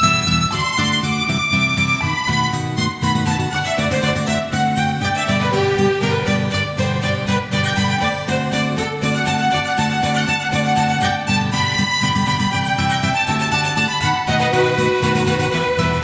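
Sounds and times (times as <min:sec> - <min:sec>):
plucked beat: 0:00.0 - 0:16.0
violin: 0:00.0 - 0:16.0.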